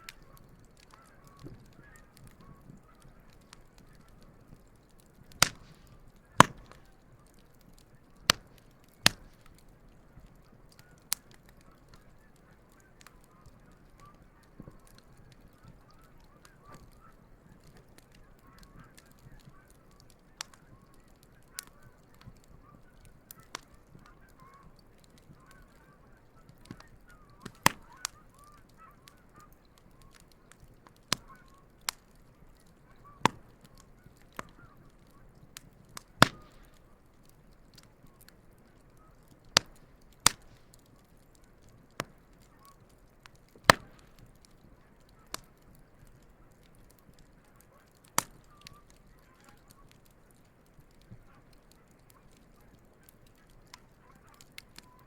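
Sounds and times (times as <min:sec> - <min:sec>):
geese honking: 0:00.0 - 0:04.7, 0:15.2 - 0:35.4, 0:53.7 - 0:54.9
low steady hiss: 0:00.0 - 0:18.6, 0:19.3 - 0:51.5
campfire crackling and popping: 0:00.0 - 0:55.0.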